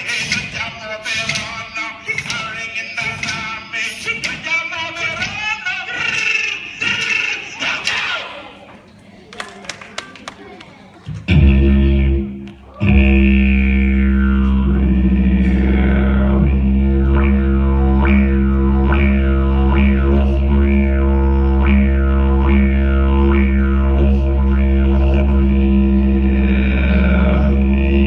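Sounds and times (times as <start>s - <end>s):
wind instrument drone: 11.3s - 28.0s.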